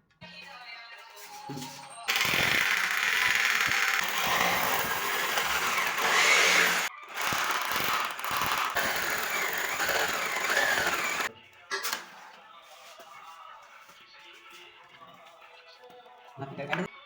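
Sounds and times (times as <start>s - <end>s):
power tool grinding whine: 2.1s - 11.3s.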